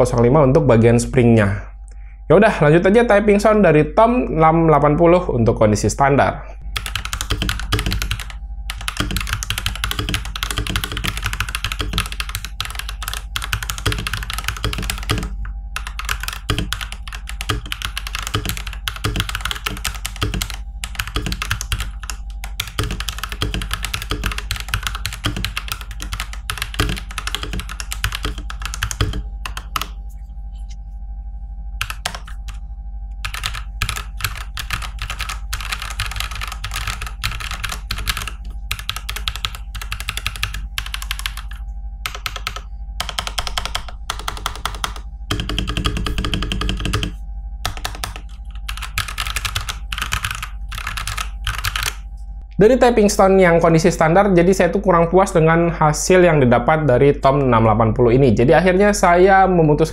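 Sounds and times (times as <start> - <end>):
fast typing on mechanical keyboard: 6.7 - 30.0, 31.8 - 32.6, 33.2 - 52.0.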